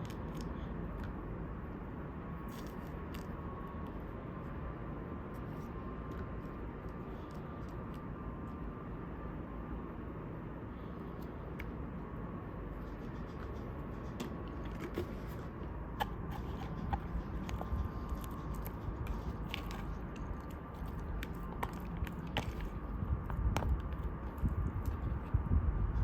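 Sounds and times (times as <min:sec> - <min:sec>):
low background rumble: 0:00.0 - 0:26.0
person chewing crunchy food: 0:02.4 - 0:04.1, 0:12.9 - 0:25.3.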